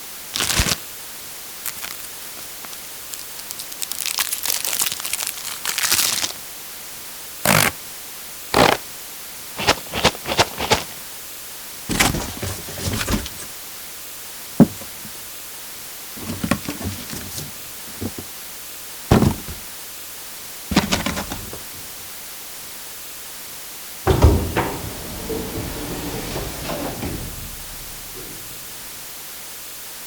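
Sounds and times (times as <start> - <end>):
paper crinkling and tearing: 3.5 - 6.3.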